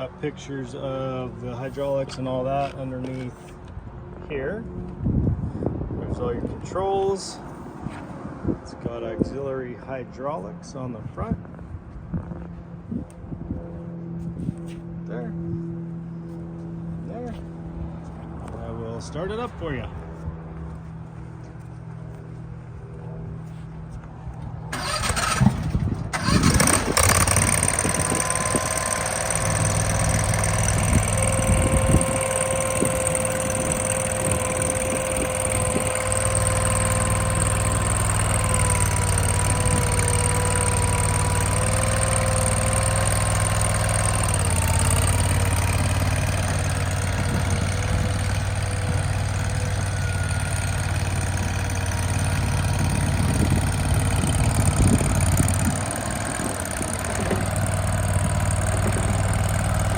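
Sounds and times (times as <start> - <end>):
loader engine starting and running: 24.7 - 59.9
steady whine: 24.7 - 59.9.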